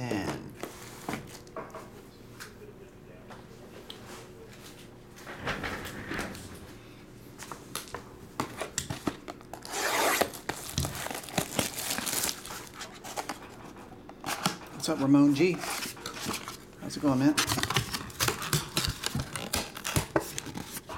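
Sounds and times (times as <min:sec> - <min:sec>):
plastic wrap crinkling: 0:09.4 - 0:13.5, 0:17.3 - 0:20.9
plastic wrap tearing: 0:09.5 - 0:13.4, 0:17.4 - 0:20.9.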